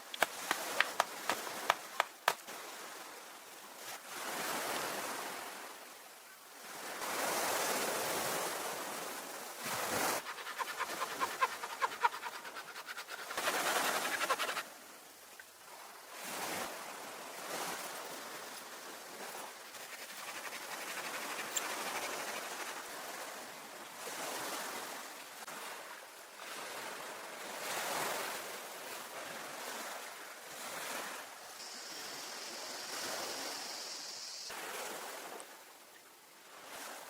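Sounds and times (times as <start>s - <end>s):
ocean waves washing ashore: 0.0s - 35.8s
high-pitched hiss: 31.4s - 34.6s.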